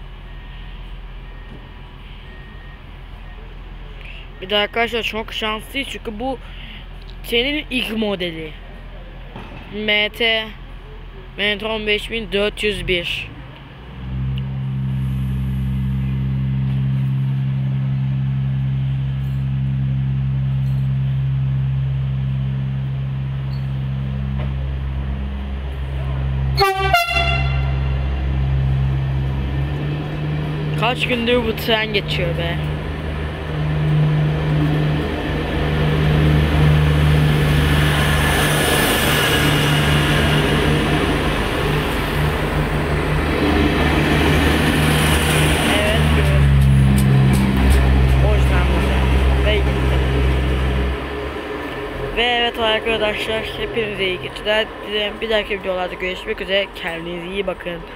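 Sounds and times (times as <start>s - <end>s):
diesel engine droning: 0.0s - 57.9s
train rolling noise: 13.5s - 57.9s.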